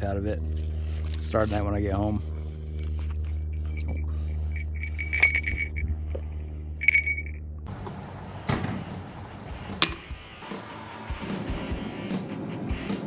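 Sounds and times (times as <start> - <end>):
small metal objects clinking: 2.8 - 5.8, 6.8 - 7.4, 9.8 - 10.1.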